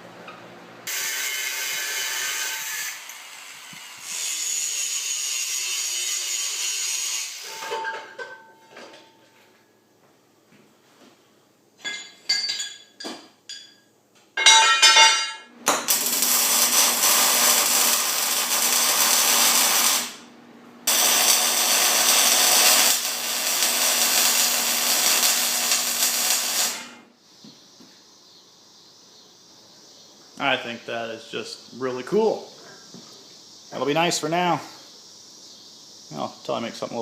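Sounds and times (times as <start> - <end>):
power tool working on steel: 0.9 - 7.6, 15.8 - 20.2, 20.9 - 27.1.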